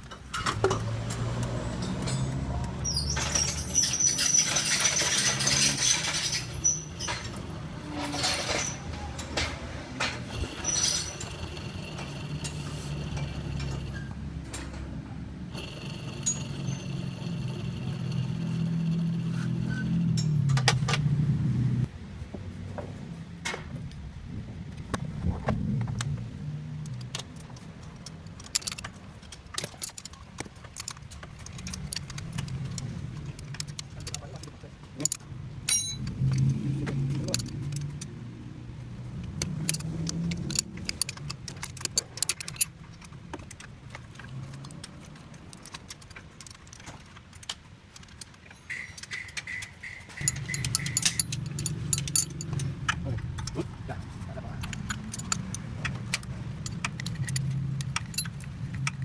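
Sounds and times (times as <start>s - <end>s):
metal tools clinking: 0.3s - 14.9s, 27.8s - 38.2s, 39.3s - 59.0s
sharp clicks: 39.2s - 53.6s.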